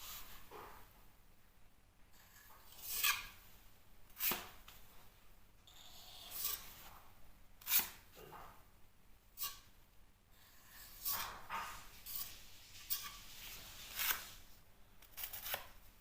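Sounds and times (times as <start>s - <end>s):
filling knife scraping filler: 2.1s - 3.4s, 5.7s - 7.0s, 10.3s - 14.5s.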